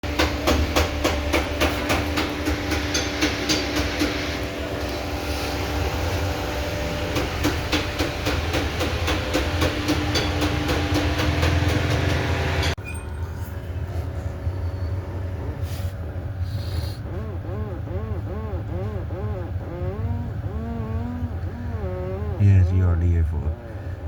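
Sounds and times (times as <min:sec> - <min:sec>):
steering clicking and knocking: 0:07.1 - 0:12.8
car engine idling hum: 0:13.6 - 0:24.0.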